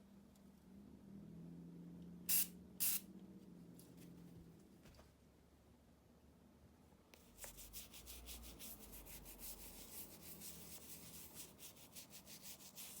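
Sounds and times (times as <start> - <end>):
scratchy rubbing strokes: 7.2 - 13.0.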